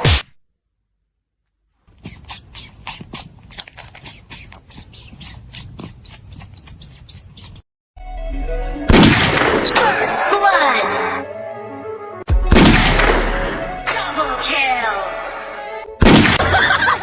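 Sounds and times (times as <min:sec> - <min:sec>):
sharp clicks or scratches: 0:01.9 - 0:07.6
music with loud hit: 0:12.3 - 0:13.9.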